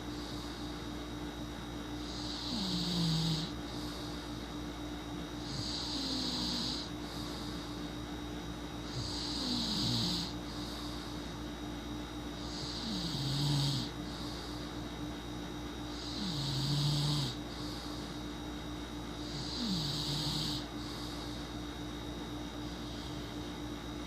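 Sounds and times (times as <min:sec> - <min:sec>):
person snoring: 0:02.0 - 0:04.3, 0:05.4 - 0:07.9, 0:08.8 - 0:11.3, 0:12.4 - 0:14.7, 0:15.9 - 0:18.2, 0:19.2 - 0:21.5.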